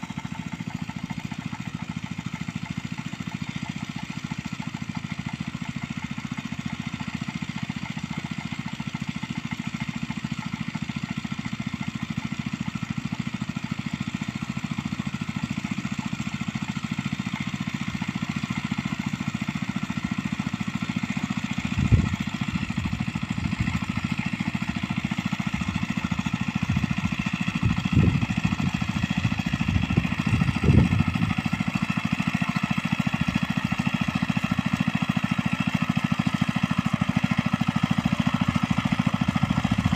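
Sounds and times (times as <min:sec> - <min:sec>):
small engine running: 0:00.0 - 0:39.9.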